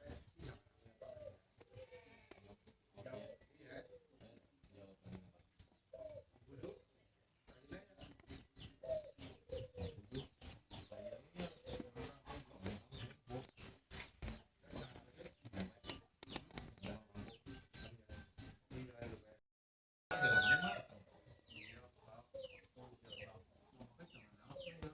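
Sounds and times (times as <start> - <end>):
cricket chirping: 0.0 - 0.6, 7.5 - 19.3, 24.5 - 24.9.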